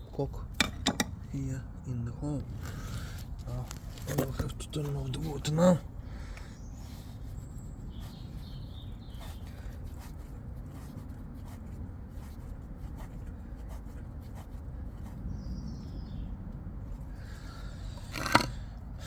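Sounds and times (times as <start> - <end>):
stopcock scrapes and clicks: 18.0 - 18.6.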